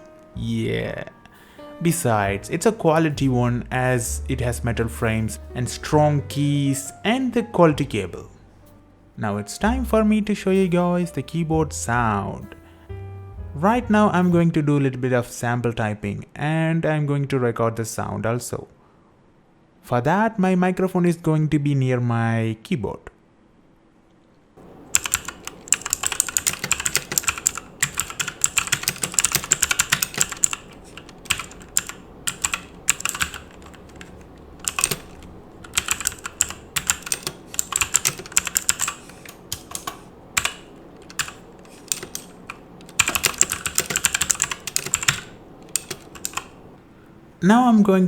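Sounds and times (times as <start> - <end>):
mechanical keyboard typing: 24.6 - 46.7.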